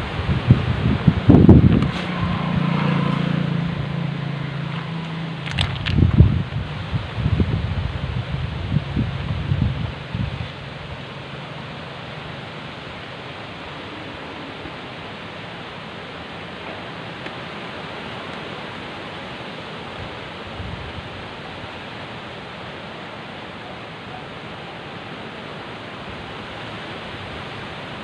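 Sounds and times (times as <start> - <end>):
steady hiss: 0.0 - 28.0.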